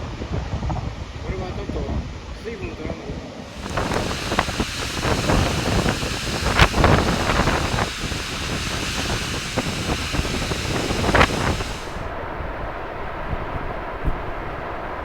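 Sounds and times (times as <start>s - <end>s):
wind buffeting microphone: 3.5s - 15.0s.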